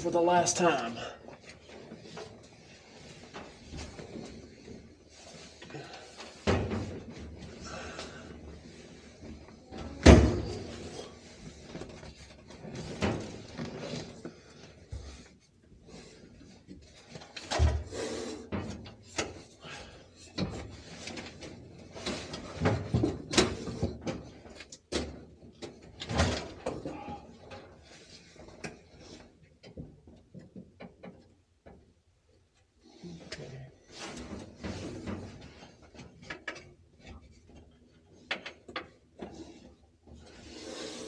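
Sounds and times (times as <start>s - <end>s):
hands and tools clicking and knocking: 29.5s - 32.0s, 34.2s - 40.2s.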